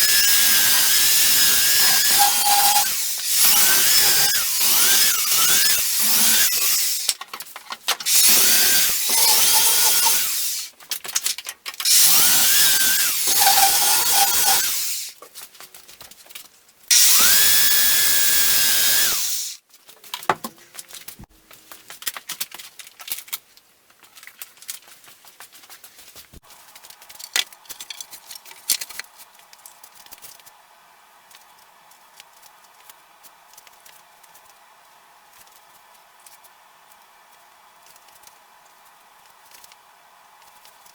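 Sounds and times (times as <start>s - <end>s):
power drill whining: 0.0s - 7.1s, 8.1s - 10.7s, 11.9s - 15.1s, 16.9s - 19.6s.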